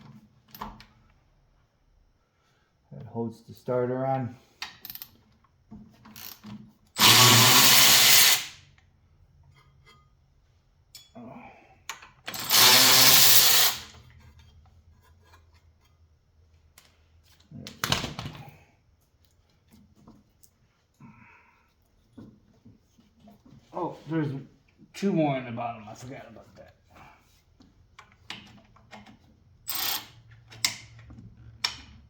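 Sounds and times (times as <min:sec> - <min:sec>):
cordless power driver running: 0:07.0 - 0:08.5.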